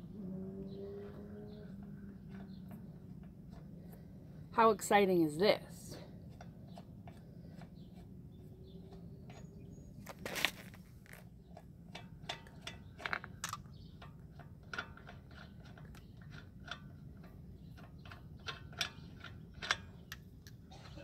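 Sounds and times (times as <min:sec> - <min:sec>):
lug wrench clicking: 0:11.5 - 0:20.6.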